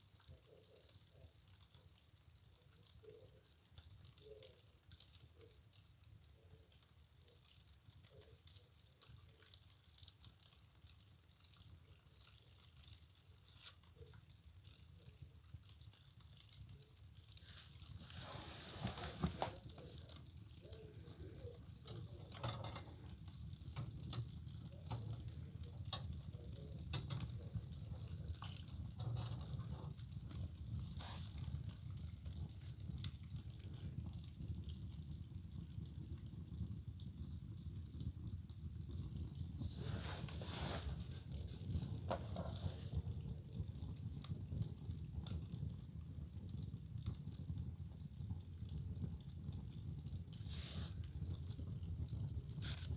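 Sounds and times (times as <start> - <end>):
fire crackling and popping: 0.0 - 52.9
low rush of flames: 0.2 - 52.9.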